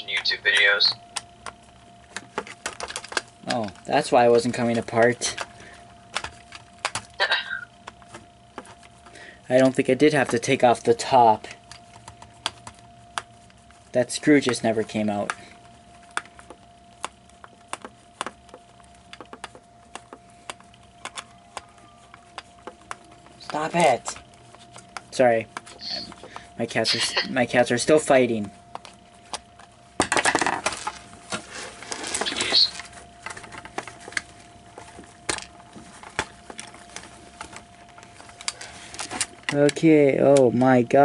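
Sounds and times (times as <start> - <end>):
faint steady whine: 0.0 - 41.0
plastic parts clicking and tapping: 0.5 - 3.8, 16.1 - 26.4, 33.2 - 36.7.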